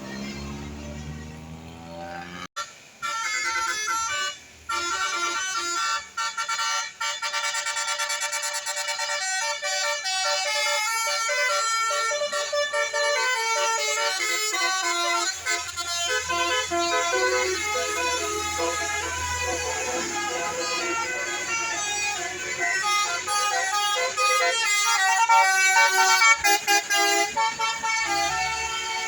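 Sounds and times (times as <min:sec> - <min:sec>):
musical air horns: 0:00.0 - 0:29.0.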